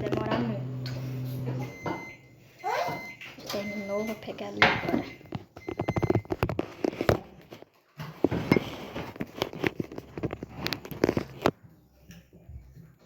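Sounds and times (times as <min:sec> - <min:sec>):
kitchen clicks and knocks: 0:02.9 - 0:12.3.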